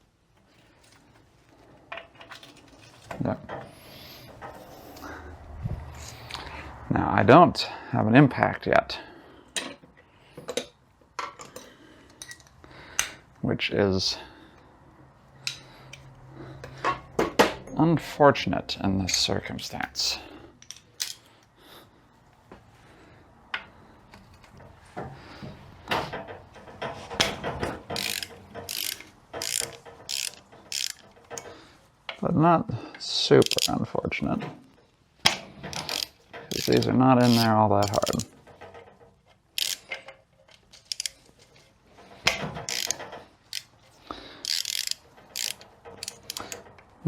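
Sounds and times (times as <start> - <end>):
ratchet wrench clicking: 27.9 - 31.4, 33.4 - 33.7, 35.7 - 38.3, 39.5 - 41.2, 42.6 - 43.7, 44.4 - 46.6.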